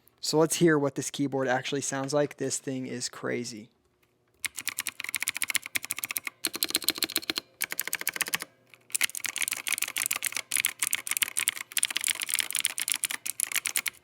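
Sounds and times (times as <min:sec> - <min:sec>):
mechanical keyboard typing: 0:04.4 - 0:14.0.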